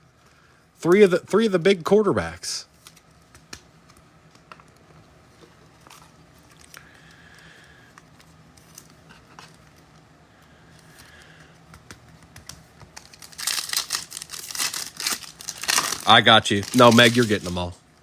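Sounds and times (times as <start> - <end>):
foil card pack crinkling and tearing: 12.9 - 17.7.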